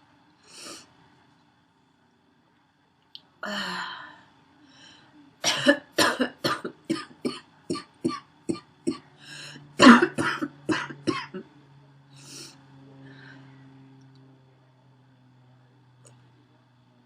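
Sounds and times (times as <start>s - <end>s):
woman coughing: 5.4s - 9.0s, 9.8s - 11.4s
heavy breaths: 9.1s - 9.7s, 12.1s - 13.8s.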